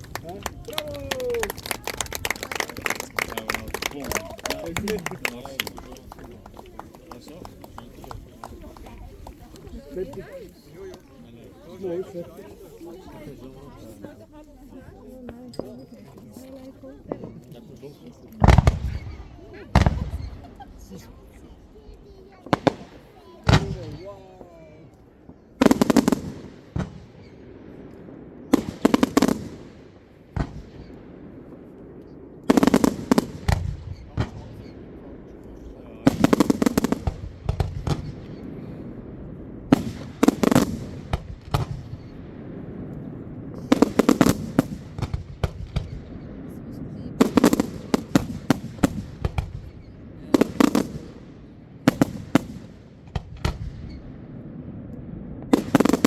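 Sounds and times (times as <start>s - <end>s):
fireworks bangs: 0.0s - 56.0s
fireworks booms: 0.0s - 56.0s
low rumbling echo: 29.4s - 50.2s.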